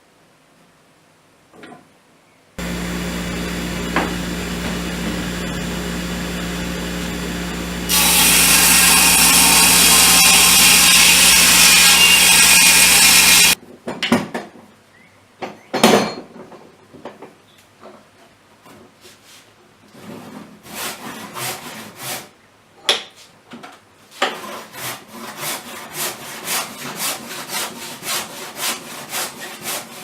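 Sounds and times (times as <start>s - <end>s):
electric power tool humming: 2.6s - 13.6s
power tool cutting wood: 2.6s - 13.6s.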